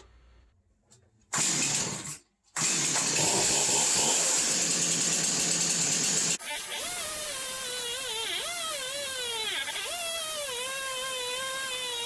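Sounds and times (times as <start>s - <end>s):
chainsaw starting and running: 1.4s - 7.9s.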